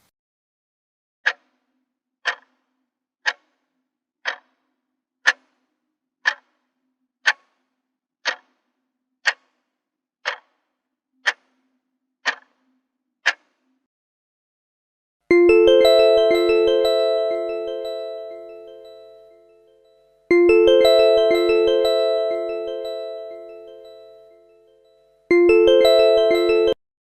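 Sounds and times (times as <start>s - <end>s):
alarm clock ticking: 15.3s - 19.5s, 20.3s - 24.4s, 25.3s - 26.8s.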